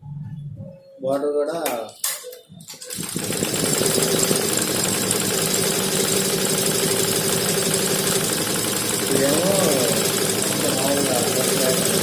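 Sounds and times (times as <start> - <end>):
embroidery machine running: 2.9 - 12.0.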